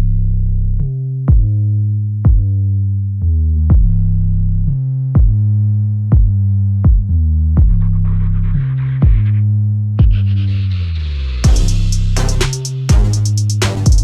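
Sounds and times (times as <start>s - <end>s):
kick drum: 0.8s - 1.6s, 2.2s - 2.6s, 3.6s - 4.3s, 5.1s - 5.5s, 6.1s - 7.9s, 9.0s - 9.3s, 10.0s - 10.3s, 11.4s - 12.3s, 12.9s - 14.0s
electronic music with synth bass: 3.7s - 14.0s.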